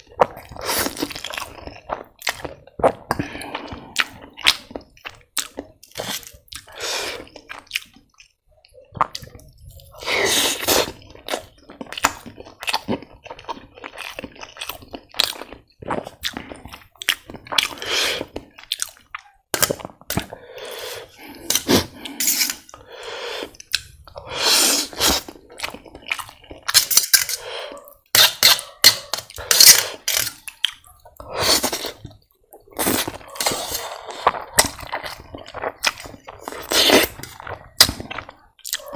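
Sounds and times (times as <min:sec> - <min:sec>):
chewing with wet smacks: 0:00.0 - 0:10.0, 0:10.9 - 0:20.4, 0:25.2 - 0:26.8, 0:34.0 - 0:38.9
slurping noodles: 0:00.3 - 0:01.6, 0:06.0 - 0:07.4, 0:09.9 - 0:11.1, 0:17.6 - 0:18.5, 0:20.1 - 0:26.0, 0:26.7 - 0:30.4, 0:31.2 - 0:32.1, 0:32.7 - 0:38.9.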